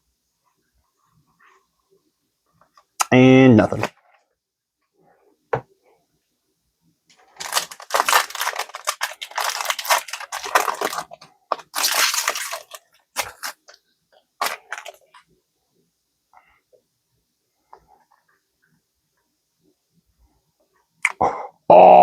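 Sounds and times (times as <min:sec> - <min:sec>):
foil wrapper crinkling: 0:07.1 - 0:13.8, 0:14.4 - 0:15.2.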